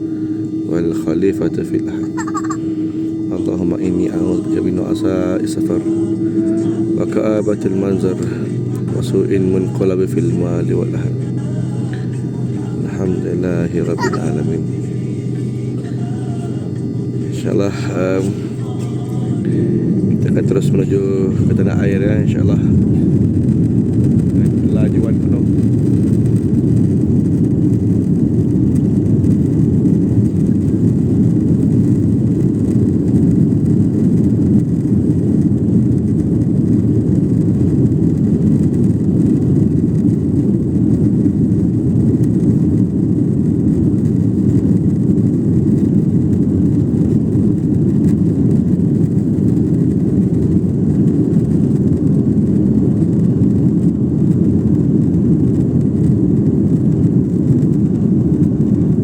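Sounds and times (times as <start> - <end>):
jet engines at takeoff thrust: 0.0 - 59.0.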